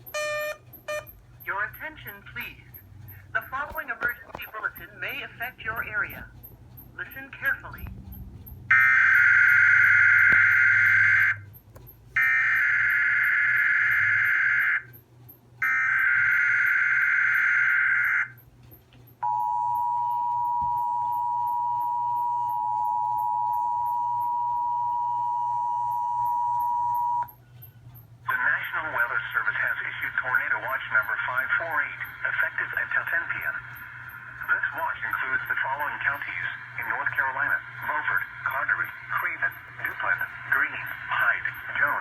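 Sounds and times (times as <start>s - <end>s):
digital data bursts: 28.3s - 42.0s.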